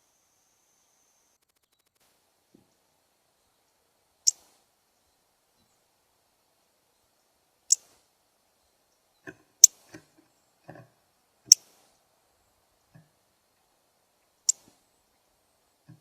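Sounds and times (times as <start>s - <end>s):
bird chip calls: 14.4s - 15.2s.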